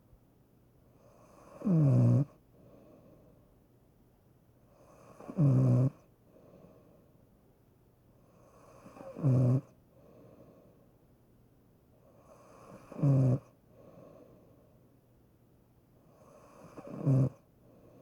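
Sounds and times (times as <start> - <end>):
soft breath: 2.5 - 3.6, 6.2 - 7.3, 9.8 - 11.1, 13.6 - 14.9, 17.6 - 18.0.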